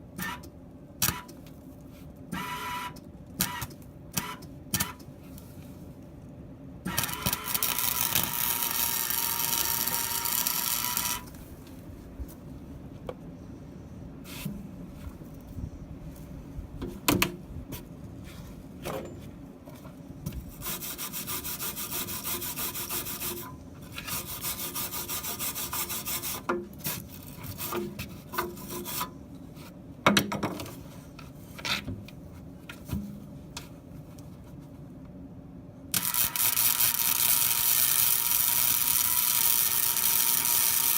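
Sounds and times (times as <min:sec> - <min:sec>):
welding arc crackling: 0:07.0 - 0:11.3, 0:35.9 - 0:40.9.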